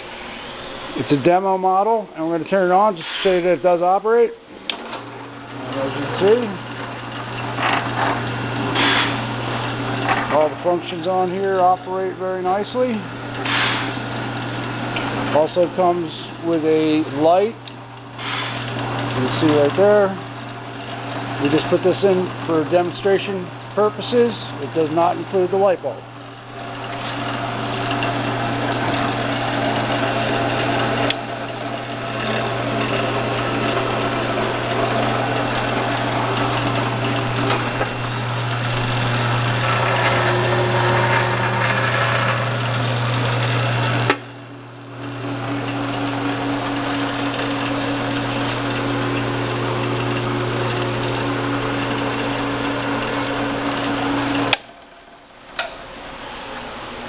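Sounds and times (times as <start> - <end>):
drill press motor humming: 0.0 - 57.0.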